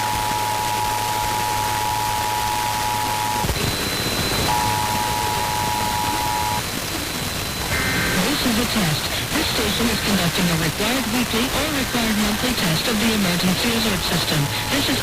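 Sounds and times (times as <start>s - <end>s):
two-tone alert signal: 0.0s - 6.6s
radio static hiss: 0.0s - 15.0s.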